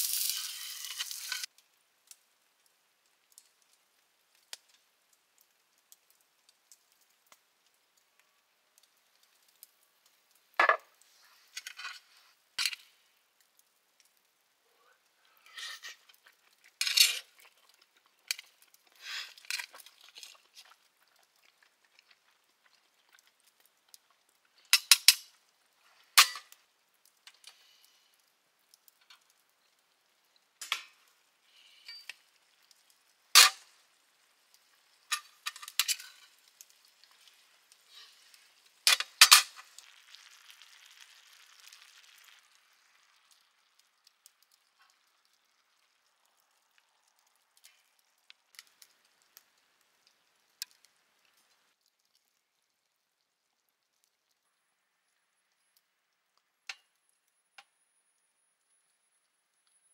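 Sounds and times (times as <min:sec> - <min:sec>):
soft sizzling hiss: 0:00.0 - 0:59.9
metal cookware clanking and scraping: 0:00.1 - 0:01.5, 0:15.4 - 0:16.1, 0:16.8 - 0:17.4, 0:26.2 - 0:26.6, 0:35.1 - 0:36.4.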